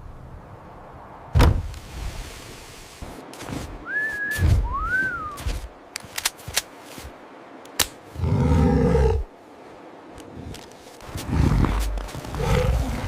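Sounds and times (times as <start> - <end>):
whistled notes: 3.8 - 5.4.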